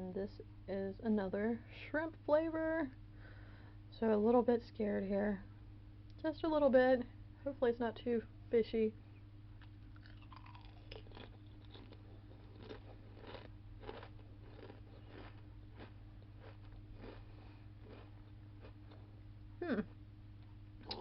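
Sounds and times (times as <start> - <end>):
person chewing crisps: 9.6 - 19.2
person humming mm: 19.6 - 20.0.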